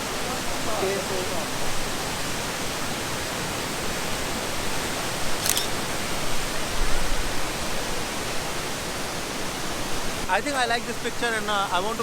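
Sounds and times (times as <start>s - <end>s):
large waterfall rushing: 0.0s - 12.0s
brief click: 5.4s - 5.8s.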